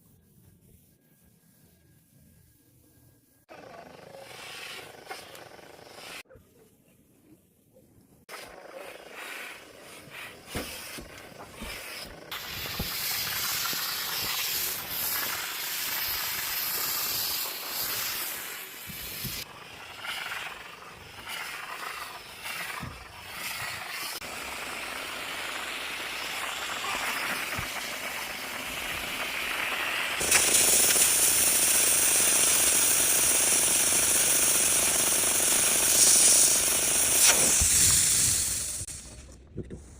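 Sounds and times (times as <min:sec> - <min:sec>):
steam cleaner hissing: 0:08.3 - 0:39.2.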